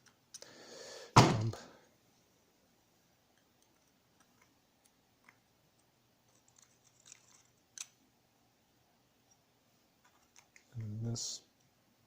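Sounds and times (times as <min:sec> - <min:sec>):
small metal parts clicking: 0:06.3 - 0:08.0.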